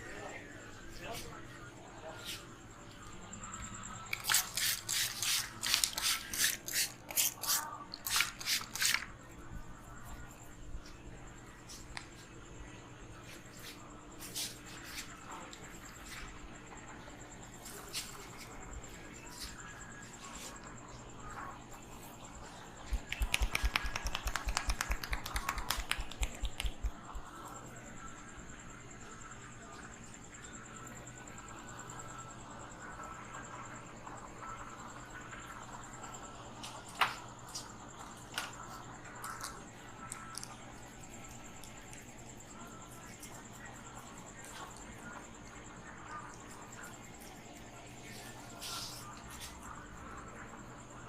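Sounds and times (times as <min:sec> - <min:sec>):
rubbing strokes on hair: 0:22.9 - 0:27.0
rapid hand slaps on head: 0:23.0 - 0:27.0.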